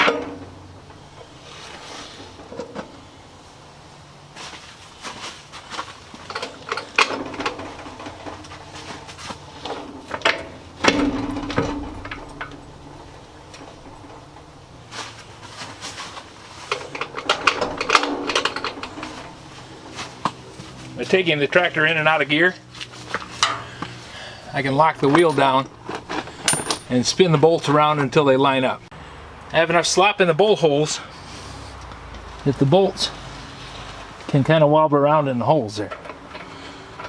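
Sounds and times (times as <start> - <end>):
metal bolts and nuts clinking: 0.0 - 1.4, 6.2 - 21.9, 24.5 - 28.2
heavy thump: 10.8 - 20.9.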